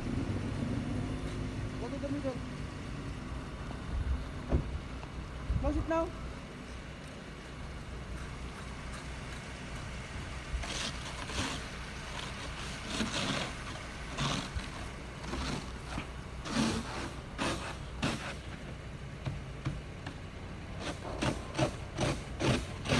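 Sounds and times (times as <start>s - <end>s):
snow scraped off a car: 10.2s - 18.7s.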